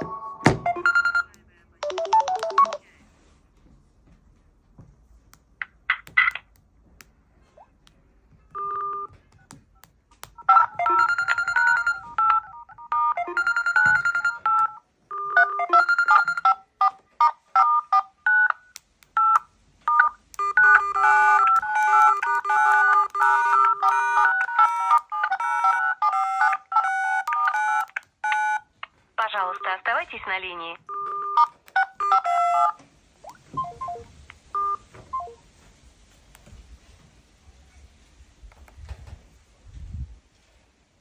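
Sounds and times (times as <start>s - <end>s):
electronic ringtone melody: 0.0s - 2.8s, 10.4s - 16.7s, 20.4s - 28.6s, 30.9s - 32.8s, 33.4s - 35.4s.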